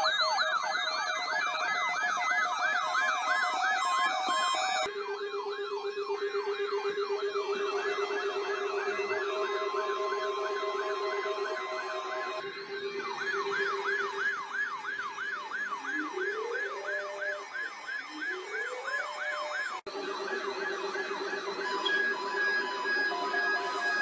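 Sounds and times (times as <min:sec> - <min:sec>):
siren yelp: 0:00.0 - 0:04.9, 0:13.0 - 0:24.0
siren wail: 0:13.0 - 0:24.0.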